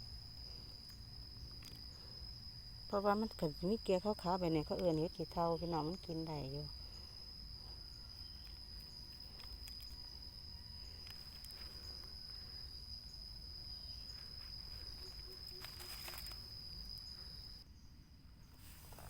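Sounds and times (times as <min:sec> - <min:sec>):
high-pitched insect drone: 0:06.8 - 0:17.6
footsteps in leaf litter: 0:14.6 - 0:16.5.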